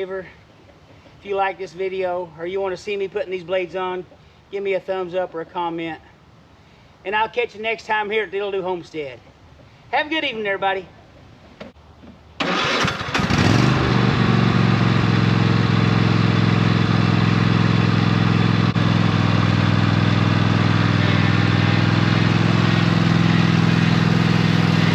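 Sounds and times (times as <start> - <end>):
engine starter cranking: 12.4 - 14.0
riding mower engine running: 12.4 - 24.9.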